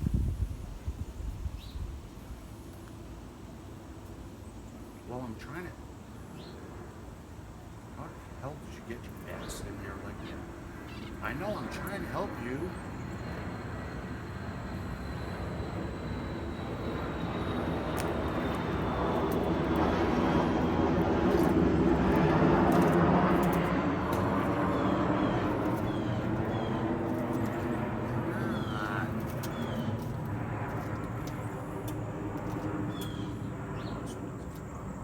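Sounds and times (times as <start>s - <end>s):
passing engine droning: 7.9s - 35.0s.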